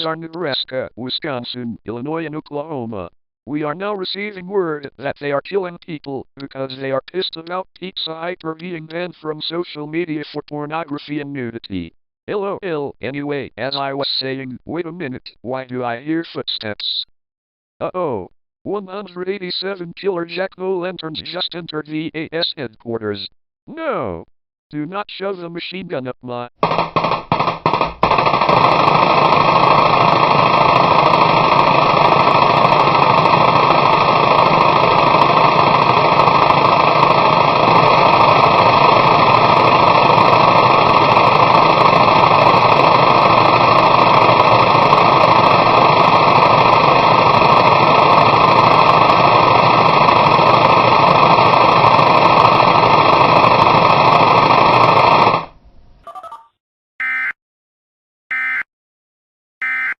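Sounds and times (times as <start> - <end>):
harsh static buzzing: 26.6 - 55.4.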